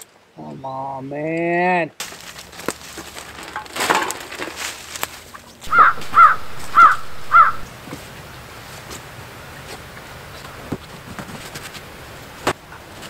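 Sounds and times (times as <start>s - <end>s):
crow cawing: 5.7s - 7.7s.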